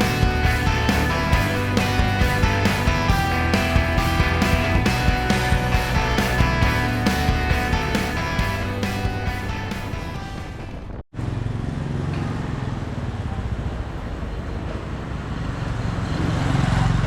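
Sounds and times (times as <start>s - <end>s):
rock music with guitar: 0.0s - 11.0s
street traffic hum: 0.0s - 17.0s.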